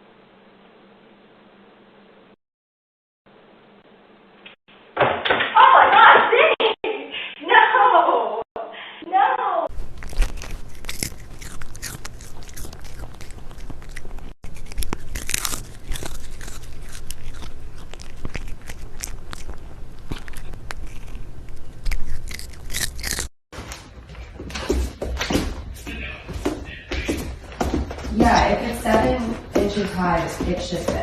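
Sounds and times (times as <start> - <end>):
animal chewing crunchy food: 9.7 - 23.3.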